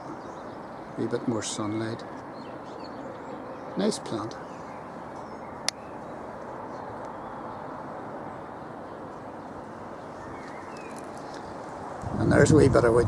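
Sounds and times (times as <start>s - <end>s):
distant road traffic hum: 0.0s - 13.0s
sharp click: 5.6s - 5.8s.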